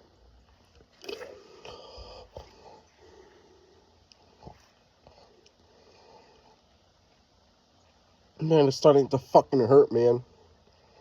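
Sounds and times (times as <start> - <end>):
faint breathing through nose: 1.2 - 6.7, 10.3 - 11.0.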